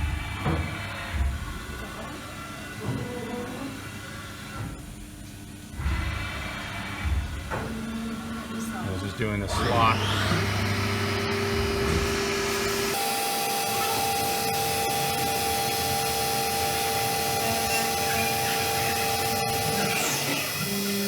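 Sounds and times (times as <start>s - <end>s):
milling machine spindle whine: 5.8s - 21.0s.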